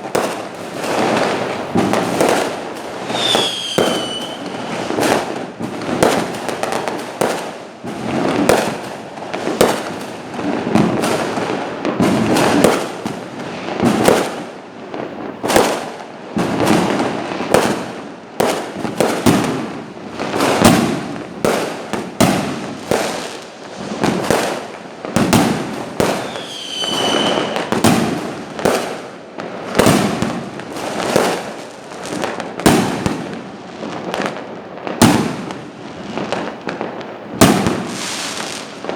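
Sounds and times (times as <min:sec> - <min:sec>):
falling firework whistle: 0:03.0 - 0:05.2, 0:26.0 - 0:28.0
fireworks shells bursting: 0:03.0 - 0:05.2.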